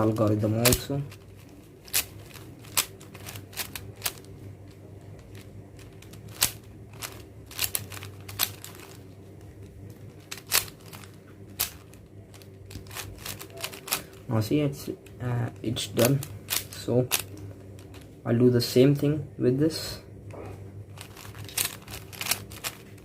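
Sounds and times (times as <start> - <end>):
puzzle cube layers clacking: 0.0 - 9.1, 10.1 - 14.2, 21.0 - 23.0
low steady hum: 0.0 - 23.0.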